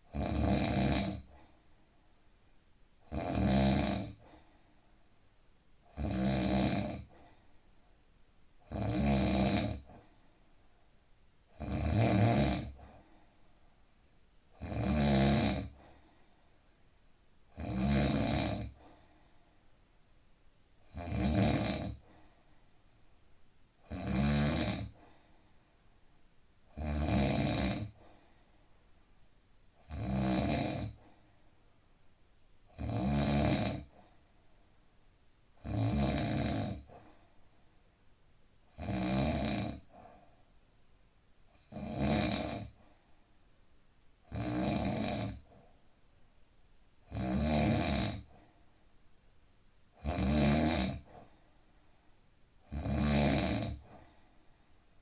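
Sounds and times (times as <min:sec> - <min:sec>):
quiet breathing: 0:00.0 - 0:08.7, 0:09.3 - 0:11.6, 0:12.2 - 0:14.6, 0:15.2 - 0:32.2, 0:33.3 - 0:43.8, 0:44.4 - 0:55.0
man snoring deeply: 0:00.1 - 0:01.3, 0:03.1 - 0:04.2, 0:05.9 - 0:07.1, 0:08.7 - 0:10.0, 0:11.5 - 0:12.8, 0:14.6 - 0:15.8, 0:17.5 - 0:18.8, 0:20.9 - 0:22.0, 0:23.8 - 0:25.0, 0:26.7 - 0:28.0, 0:29.8 - 0:31.0, 0:32.7 - 0:33.9, 0:35.6 - 0:36.9, 0:38.7 - 0:40.0, 0:41.6 - 0:42.8, 0:44.3 - 0:45.5, 0:47.1 - 0:48.4, 0:50.0 - 0:51.1, 0:52.7 - 0:53.9.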